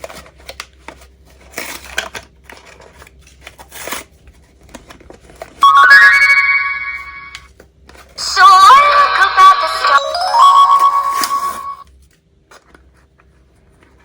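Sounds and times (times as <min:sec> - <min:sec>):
loud held chime: 0:05.6 - 0:07.4, 0:08.2 - 0:11.8
toy playing electronic tunes: 0:05.6 - 0:07.4, 0:08.2 - 0:11.8.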